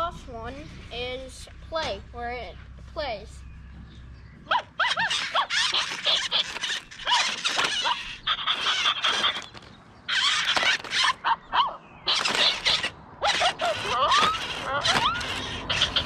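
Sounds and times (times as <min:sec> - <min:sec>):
robot dog toy electronic yips: 0:04.5 - 0:16.0.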